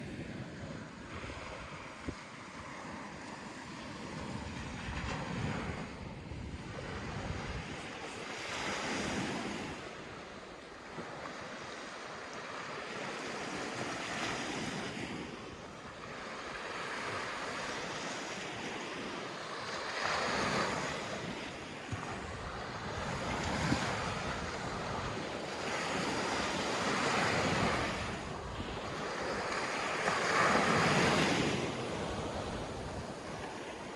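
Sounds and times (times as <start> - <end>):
wind buffeting microphone: 0.0 - 11.7, 19.8 - 33.9
waves breaking on sandy beach: 0.0 - 33.9.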